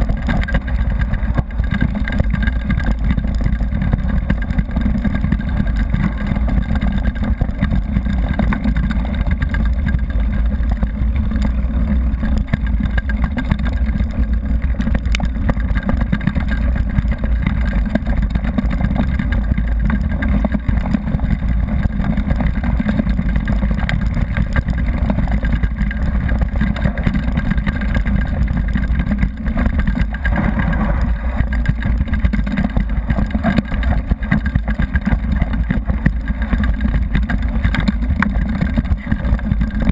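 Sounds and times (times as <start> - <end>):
tyres rumbling over gravel: 0.0 - 39.9.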